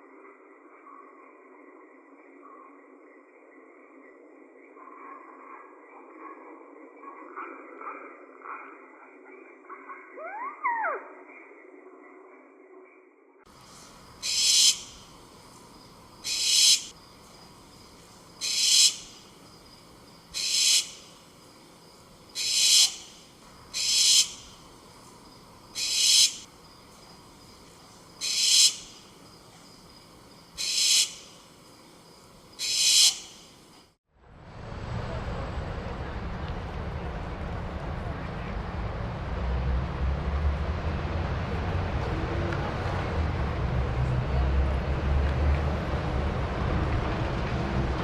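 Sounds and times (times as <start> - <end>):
hissy high-pitched animal call: 13.7 - 15.1, 16.2 - 17.0, 18.4 - 19.3, 20.3 - 21.2, 22.3 - 24.7, 25.7 - 26.5, 28.2 - 29.0, 30.6 - 31.4, 32.6 - 33.5
low rumbling noise: 34.2 - 48.0.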